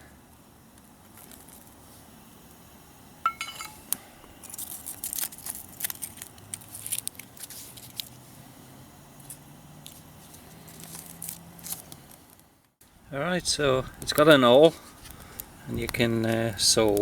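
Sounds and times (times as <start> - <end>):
fire ticking and crackling: 0.2 - 3.2, 3.8 - 17.0
ringing metal clink: 3.3 - 3.8.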